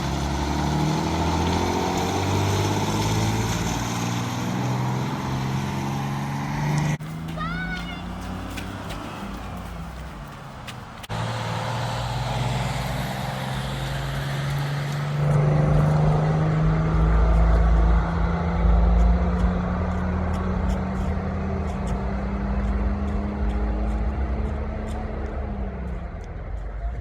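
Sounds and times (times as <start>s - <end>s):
vehicle engine running: 0.0s - 27.0s
deep rumble: 12.2s - 27.0s.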